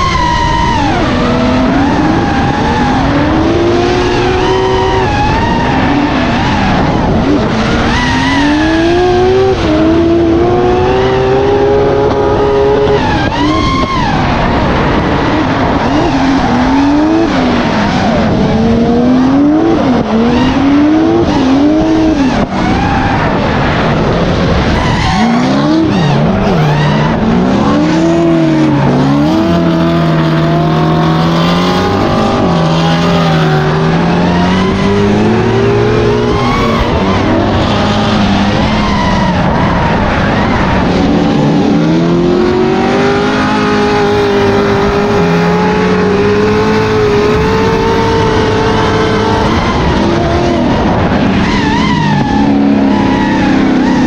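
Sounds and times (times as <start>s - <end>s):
car engines revving: 0.0s - 54.0s
tyres screeching: 24.7s - 40.7s.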